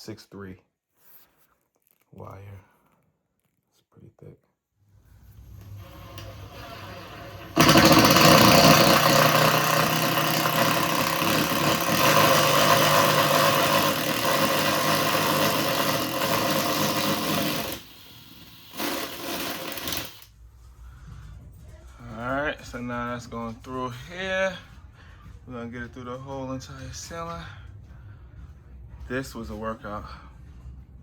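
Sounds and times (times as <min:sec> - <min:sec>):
power drill boring through wood: 0:05.5 - 0:20.3.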